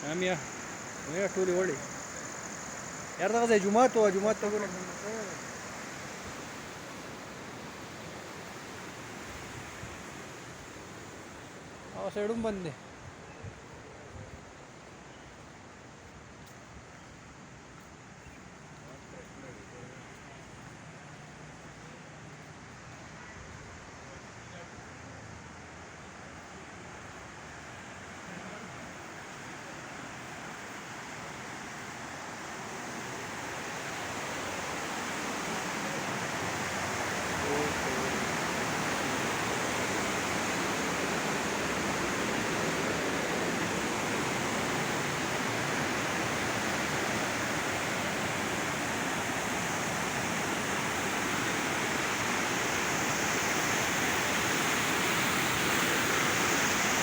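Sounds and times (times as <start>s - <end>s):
river water rushing: 0.0s - 13.0s, 26.3s - 57.0s.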